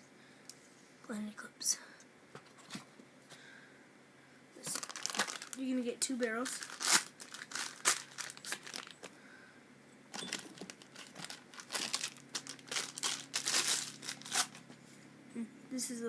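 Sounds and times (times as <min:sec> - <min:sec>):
packaging crinkling: 0:04.6 - 0:05.8, 0:06.4 - 0:09.1, 0:10.1 - 0:14.7.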